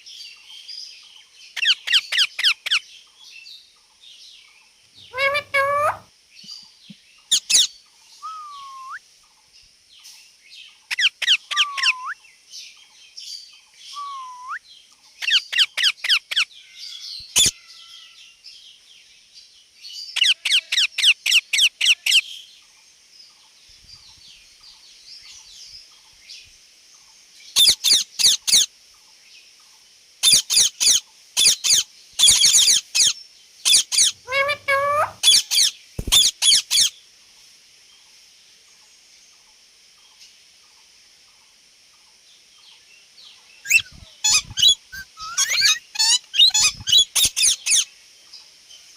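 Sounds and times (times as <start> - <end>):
parakeet screeching: 5.0 - 6.0, 11.2 - 12.1, 33.7 - 36.9, 43.7 - 47.8
parakeet whistles: 5.1 - 6.0, 7.4 - 9.0, 11.5 - 12.2, 14.0 - 14.6, 33.7 - 35.4, 43.7 - 47.8.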